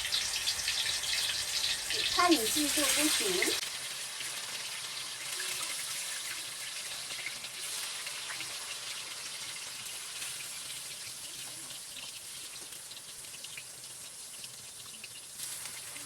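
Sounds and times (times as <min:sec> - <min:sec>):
kitchen hiss: 0:00.0 - 0:16.0
small crackles: 0:05.2 - 0:16.0.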